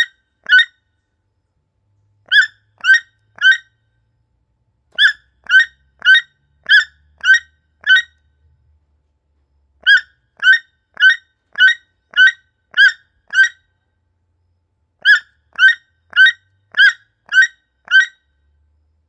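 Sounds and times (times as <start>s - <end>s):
toucan calling: 0.0s - 0.7s, 2.3s - 3.7s, 5.0s - 8.2s, 9.8s - 13.6s, 15.0s - 18.2s.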